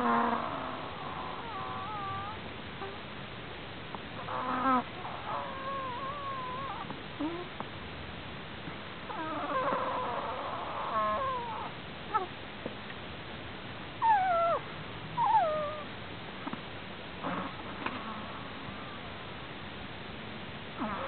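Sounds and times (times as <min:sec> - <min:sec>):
prairie dog snoring squeaky whistles: 0:00.0 - 0:03.0, 0:04.2 - 0:07.5, 0:09.1 - 0:12.3, 0:14.0 - 0:14.6, 0:15.2 - 0:15.9, 0:17.2 - 0:19.0, 0:20.8 - 0:21.0.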